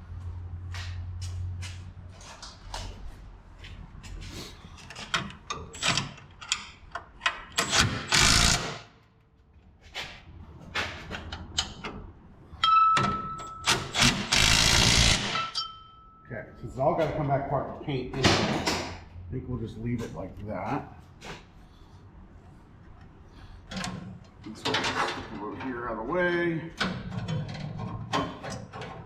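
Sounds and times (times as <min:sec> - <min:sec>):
tools clicking and knocking on metal: 0:04.7 - 0:08.7, 0:10.7 - 0:15.9, 0:23.7 - 0:26.0, 0:26.8 - 0:29.0.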